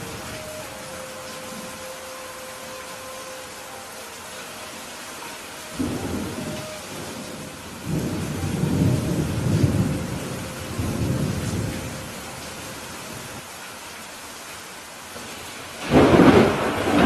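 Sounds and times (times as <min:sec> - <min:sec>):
steady rain: 0:00.0 - 0:17.0
thunder rumbling: 0:05.7 - 0:13.4, 0:15.8 - 0:17.0.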